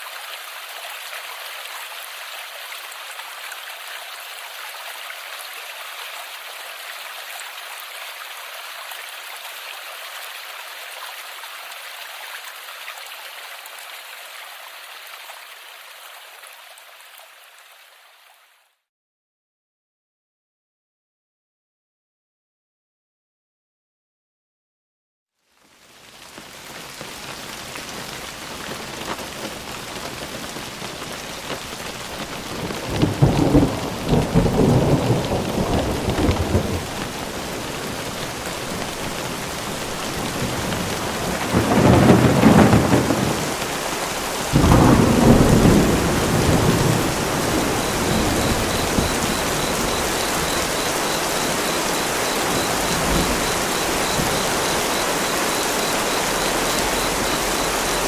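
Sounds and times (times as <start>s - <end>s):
steady rain: 0.0s - 18.8s, 25.4s - 58.0s
thunder rumbling: 27.0s - 58.0s.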